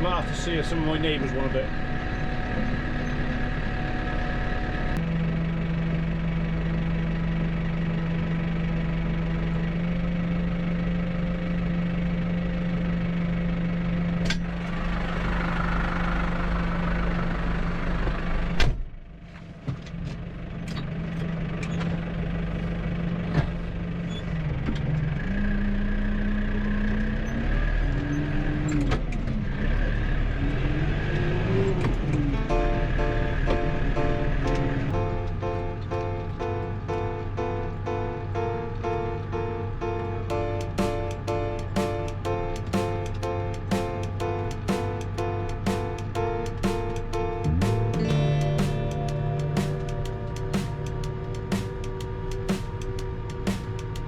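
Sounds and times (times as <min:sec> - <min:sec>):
tractor engine running: 0:00.0 - 0:18.6, 0:40.3 - 0:54.0
music: 0:32.4 - 0:54.0.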